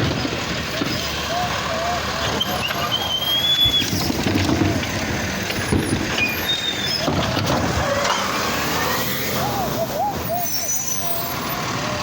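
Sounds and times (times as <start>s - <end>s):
road noise: 0.0s - 12.0s
vehicle engine rumble: 0.0s - 12.0s
high squeaks: 6.2s - 7.1s, 10.2s - 11.6s.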